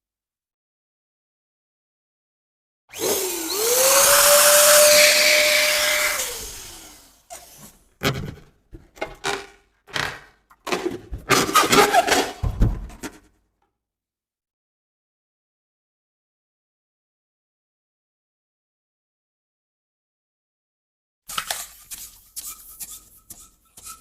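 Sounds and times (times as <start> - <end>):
electric balloon pump whining: 2.9 - 7.8
balloon squeaks and rustles: 11.2 - 13.2.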